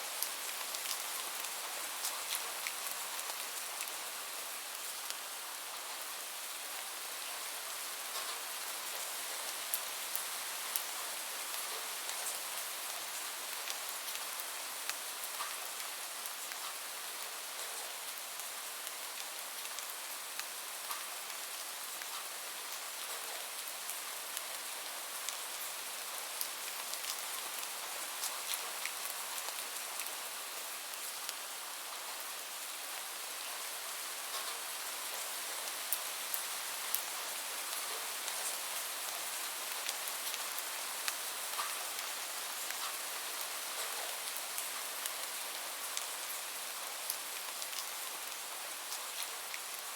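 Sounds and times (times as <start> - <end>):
light rain hissing: 0.0 - 49.9.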